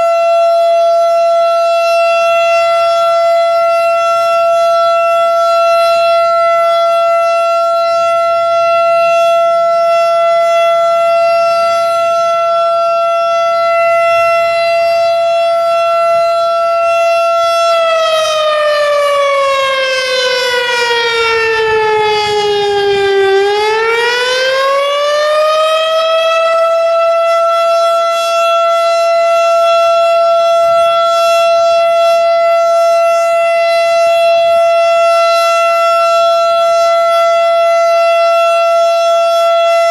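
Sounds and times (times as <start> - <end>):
outdoor warning siren: 0.0 - 39.9.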